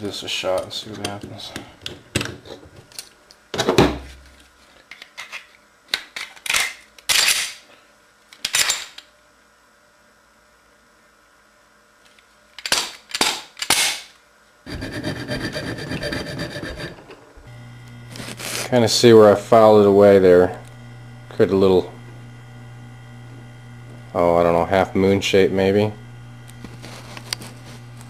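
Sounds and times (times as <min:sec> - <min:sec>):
hand file rasping on metal: 0:14.7 - 0:17.1.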